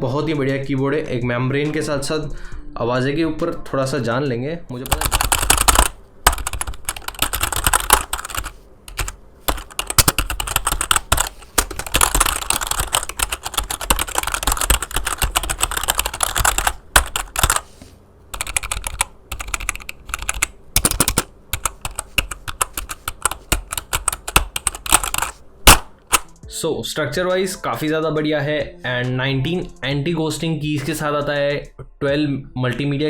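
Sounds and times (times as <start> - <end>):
keyboard key clacks: 4.8 - 17.6, 18.4 - 26.4.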